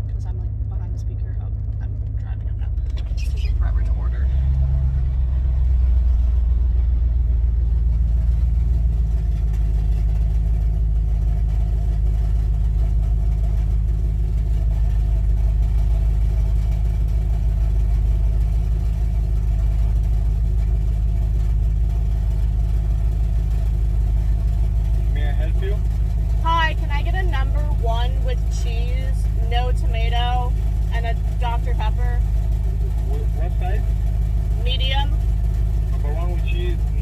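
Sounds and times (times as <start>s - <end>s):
car engine idling: 0.0s - 37.0s.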